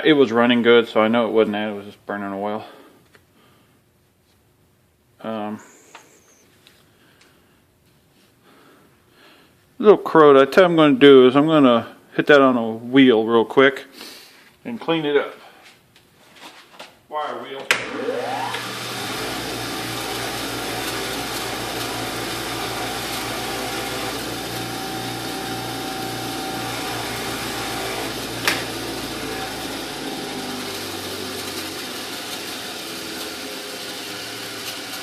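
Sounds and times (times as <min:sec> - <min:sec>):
wire wheel brushing metal: 0:18.2 - 0:33.4.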